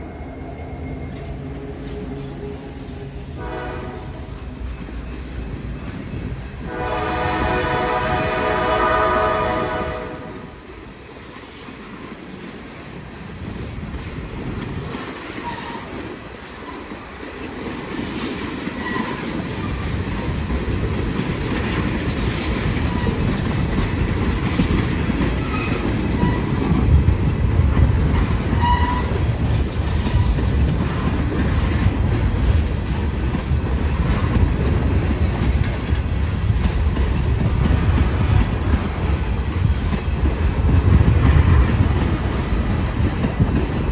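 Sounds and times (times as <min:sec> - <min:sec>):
train rumble: 0:00.0 - 0:43.9
train wheels clacking: 0:00.7 - 0:43.9
wheel squeals: 0:28.5 - 0:29.3.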